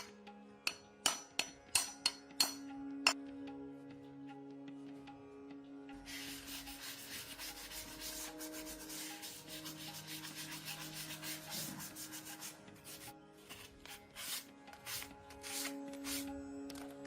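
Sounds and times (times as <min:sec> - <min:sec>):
soft background music: 0:00.0 - 0:17.0
rubbing strokes on a surface: 0:06.1 - 0:16.3.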